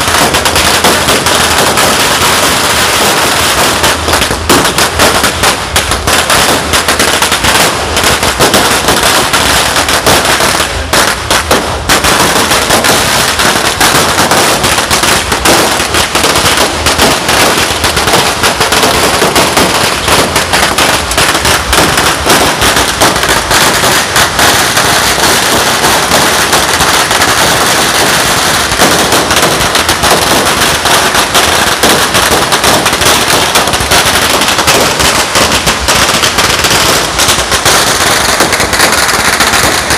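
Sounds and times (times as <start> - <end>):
firecrackers crackling: 0.0 - 39.9.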